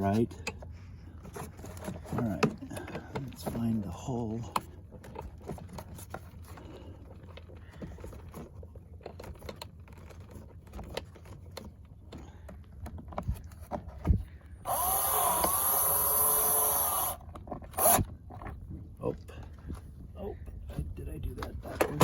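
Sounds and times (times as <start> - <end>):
power drill whining: 14.6 - 18.1.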